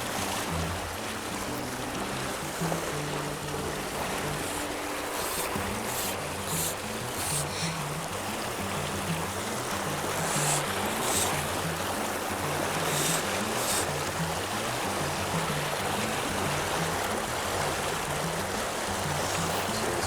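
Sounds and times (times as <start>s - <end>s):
river water rushing: 0.0s - 20.0s
hissing bursts: 3.9s - 8.1s, 10.0s - 14.2s.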